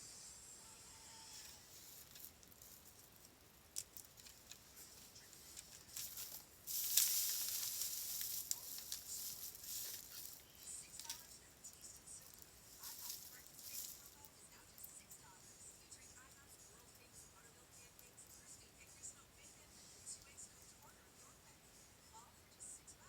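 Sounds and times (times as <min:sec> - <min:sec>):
hiss: 0:00.0 - 0:02.8, 0:06.0 - 0:10.9.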